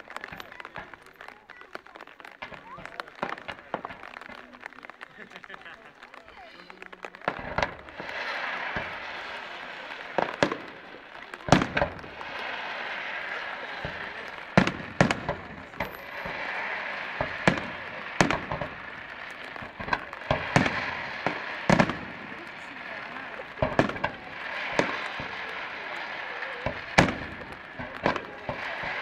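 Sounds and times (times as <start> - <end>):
fireworks bangs: 0.0 - 29.0.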